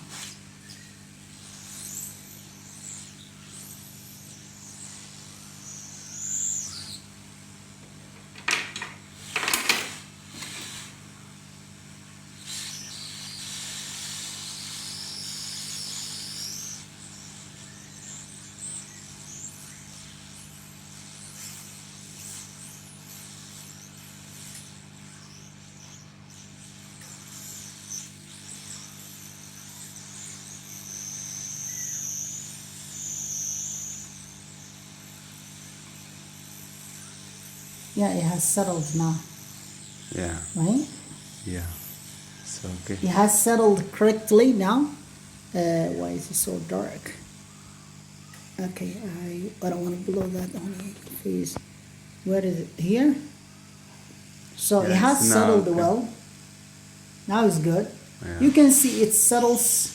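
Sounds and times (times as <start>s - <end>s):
hot-air gun blowing: 8.1s - 11.1s, 54.6s - 56.2s, 57.4s - 59.9s.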